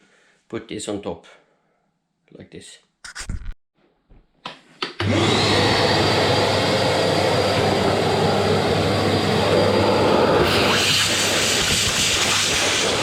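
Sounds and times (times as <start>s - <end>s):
vacuum cleaner running: 5.0s - 13.0s.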